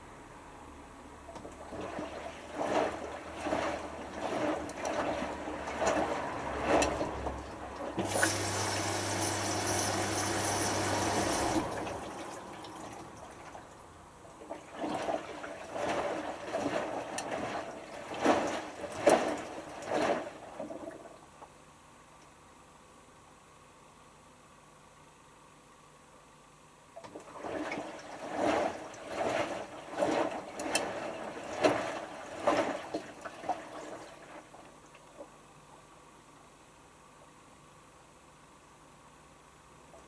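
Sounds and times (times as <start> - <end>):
washing machine water sloshing: 1.2 - 21.4, 27.0 - 35.4
rushing water with low hum: 1.3 - 21.1, 27.0 - 35.4.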